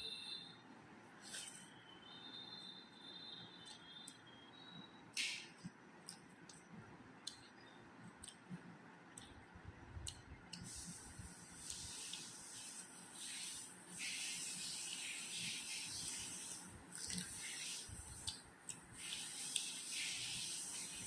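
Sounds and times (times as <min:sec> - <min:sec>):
wet eating clicks: 0:05.2 - 0:10.7
wet crackly squishing: 0:16.8 - 0:18.4.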